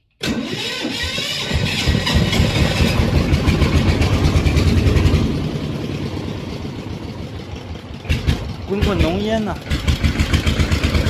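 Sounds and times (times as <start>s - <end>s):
starter motor whirring: 0.2s - 5.2s
diesel engine running: 0.2s - 11.0s.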